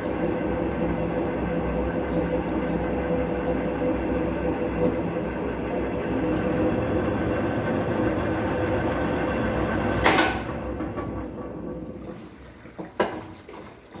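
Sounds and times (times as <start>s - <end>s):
roaring bearing hum: 0.0s - 11.9s
washing machine running: 0.0s - 14.0s.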